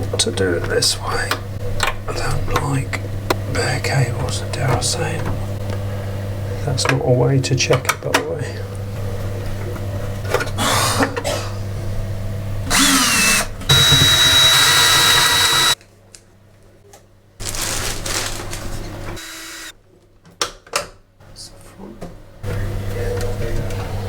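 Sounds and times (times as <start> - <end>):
power drill whining: 12.7 - 15.8, 19.2 - 19.7.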